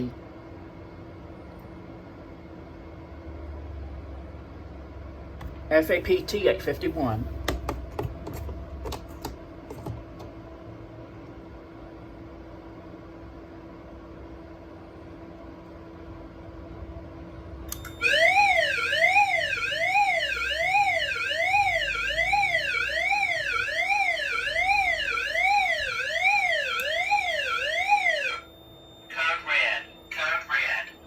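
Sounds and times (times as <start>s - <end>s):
faint steady hum: 0.0s - 31.0s
sweeping alarm siren tone: 17.9s - 31.0s.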